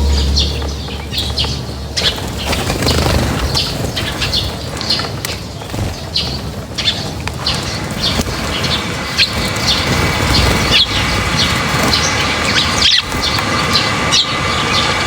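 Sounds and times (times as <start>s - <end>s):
small birds chirping: 0.0s - 15.0s
wings flapping: 0.0s - 15.0s.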